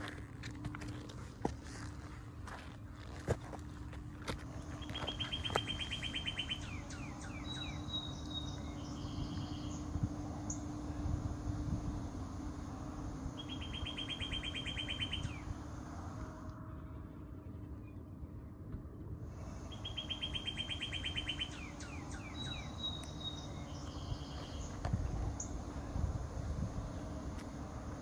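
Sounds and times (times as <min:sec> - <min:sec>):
low steady rumble: 0:00.0 - 0:28.0
songbird trilling: 0:04.8 - 0:09.8, 0:13.4 - 0:15.5, 0:19.6 - 0:24.8
bird whistle: 0:13.4 - 0:15.5, 0:19.7 - 0:24.6.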